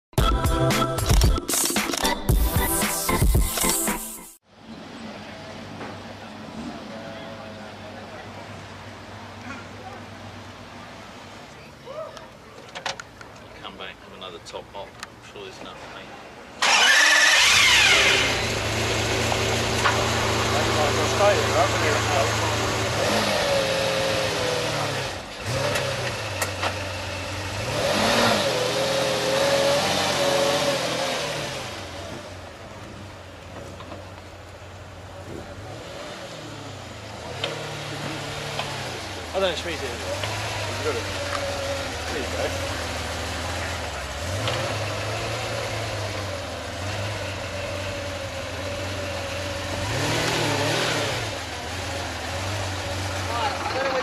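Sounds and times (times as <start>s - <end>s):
sports car engine revving: 16.6s - 33.0s, 35.1s - 54.0s.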